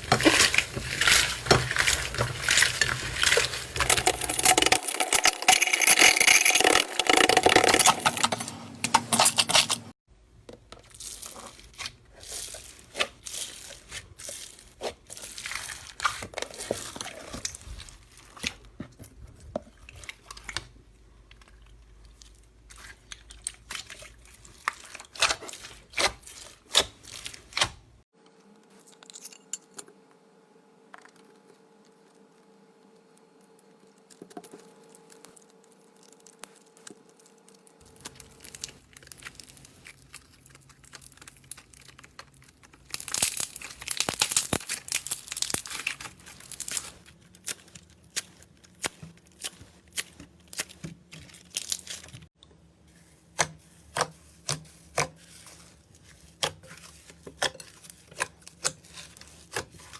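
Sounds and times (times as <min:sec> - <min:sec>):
slime crackling and popping: 0:00.0 - 0:07.9, 0:35.1 - 0:52.3.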